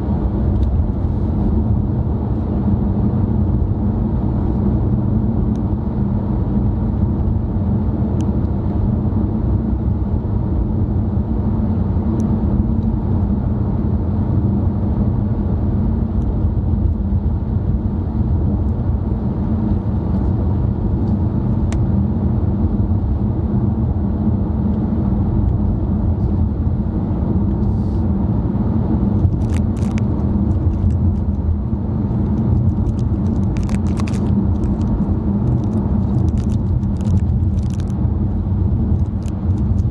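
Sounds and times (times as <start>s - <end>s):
car cabin road and engine rumble: 0.0s - 39.9s.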